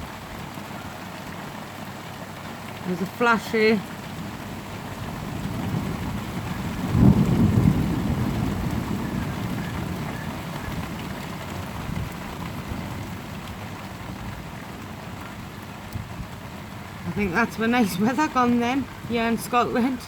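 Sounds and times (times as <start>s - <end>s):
heavy rain: 0.0s - 20.0s
thunder rumbling: 4.2s - 20.0s.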